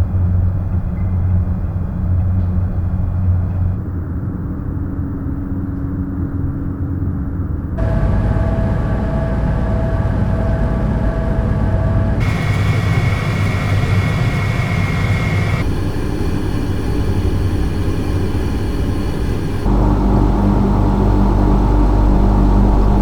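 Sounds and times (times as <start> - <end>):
electric fan motor running: 7.8 - 23.0.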